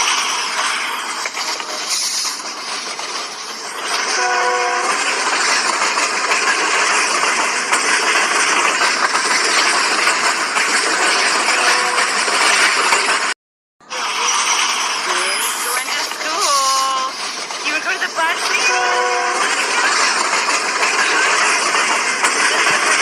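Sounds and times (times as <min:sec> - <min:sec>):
train rolling and wheel clatter: 0:00.0 - 0:23.0
train horn: 0:04.2 - 0:05.0, 0:11.5 - 0:12.2, 0:18.6 - 0:19.5.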